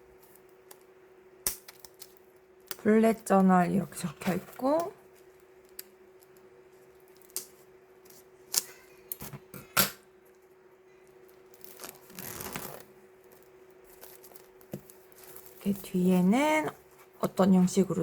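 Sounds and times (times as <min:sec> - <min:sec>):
wrapping rustling: 0:11.1 - 0:17.2.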